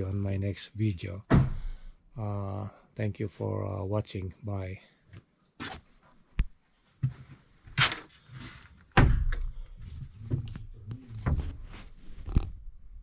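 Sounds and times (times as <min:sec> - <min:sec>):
heavy thump: 0:01.3 - 0:01.9
knocks and thuds: 0:01.3 - 0:01.9, 0:09.0 - 0:09.6, 0:10.2 - 0:11.7.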